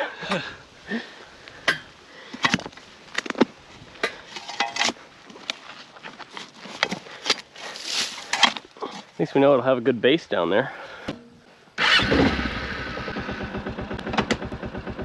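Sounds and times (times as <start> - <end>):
tools knocking and scraping: 4.0 - 5.0.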